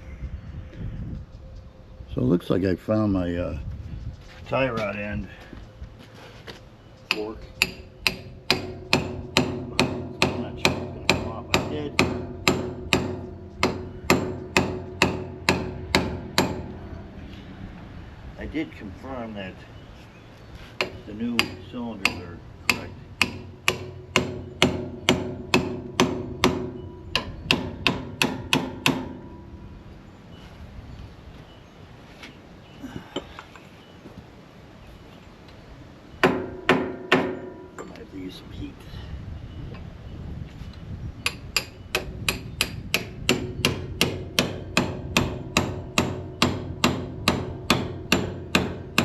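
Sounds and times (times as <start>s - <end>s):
hammer blows on steel: 7.1s - 17.0s.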